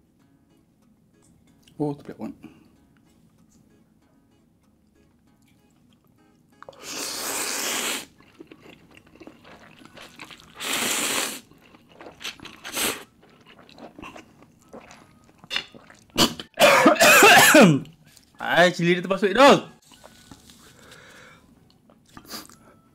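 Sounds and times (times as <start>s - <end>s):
person slurping noodles: 6.7s - 14.2s
chewing: 8.0s - 16.4s, 19.8s - 22.8s.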